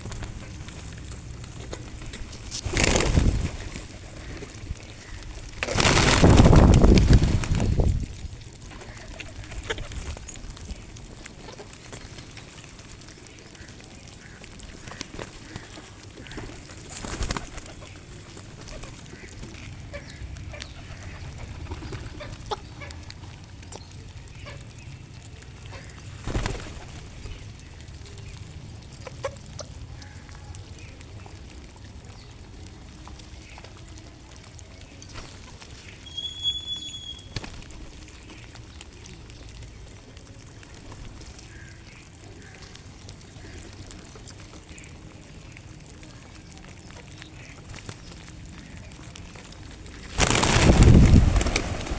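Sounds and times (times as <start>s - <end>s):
birds calling lightly: 0.0s - 6.6s, 7.6s - 51.9s
high bird chirp: 36.0s - 37.4s.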